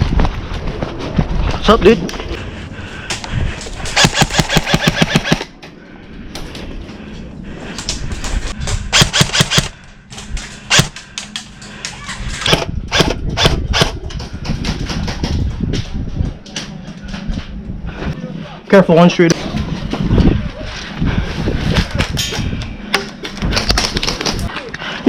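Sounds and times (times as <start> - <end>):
airsoft guns firing: 3.9 - 5.5, 8.9 - 9.8.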